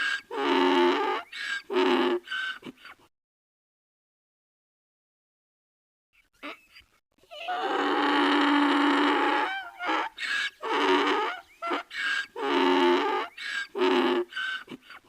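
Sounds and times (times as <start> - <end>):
donkey braying: 0.0 - 2.7, 6.4 - 15.0.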